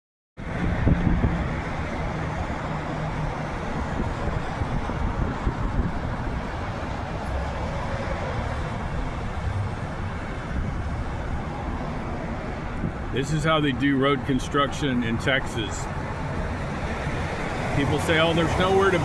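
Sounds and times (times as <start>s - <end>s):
car road noise: 0.4s - 19.0s.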